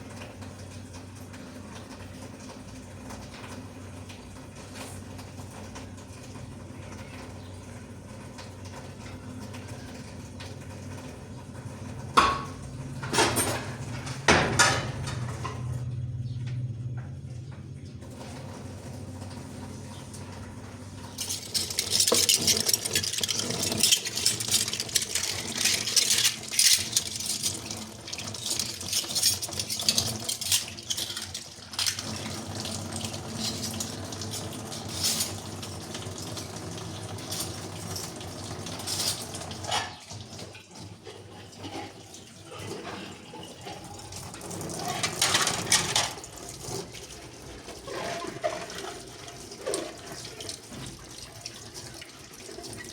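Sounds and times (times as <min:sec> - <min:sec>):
water running: 0:18.1 - 0:52.9
small clinks and knocks: 0:21.1 - 0:32.2.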